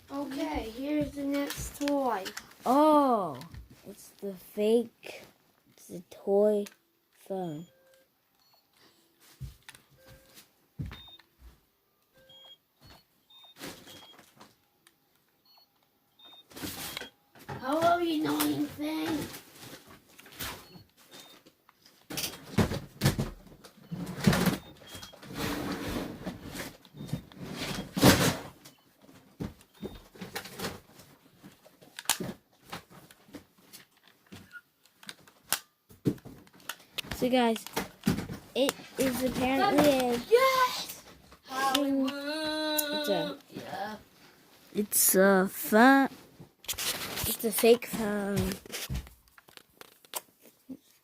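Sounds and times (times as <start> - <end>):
plastic toy phone rustling: 1.1 - 2.8, 31.3 - 40.6, 46.7 - 50.6
short electronic beeps: 7.4 - 8.8
plastic clicks: 36.4 - 38.8, 49.2 - 50.3.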